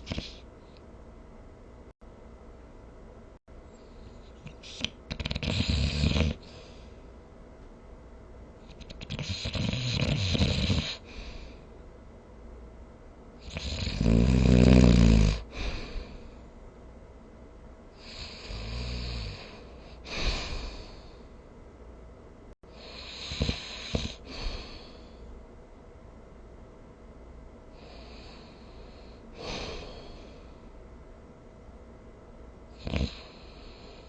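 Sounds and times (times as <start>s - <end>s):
person snoring: 0.0s - 0.4s, 4.3s - 6.8s, 8.7s - 11.5s, 13.4s - 16.2s, 18.0s - 21.2s, 22.7s - 25.1s, 27.8s - 30.5s, 32.8s - 34.0s.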